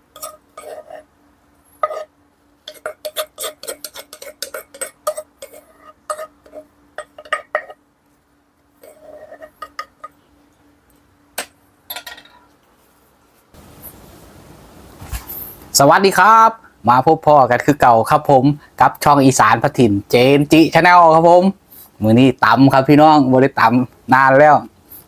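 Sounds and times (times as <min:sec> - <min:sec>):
faint steady hum: 0:00.0 - 0:25.0
dishes and utensils clinking: 0:11.4 - 0:12.5.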